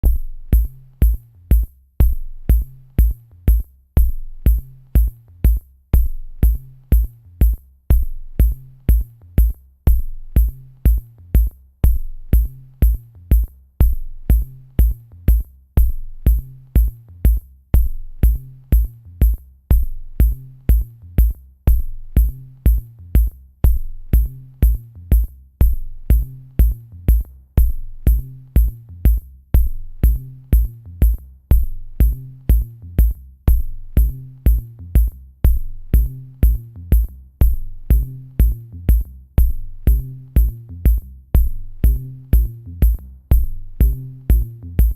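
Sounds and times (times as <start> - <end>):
electronic music with drum beat: 0.0 - 44.9.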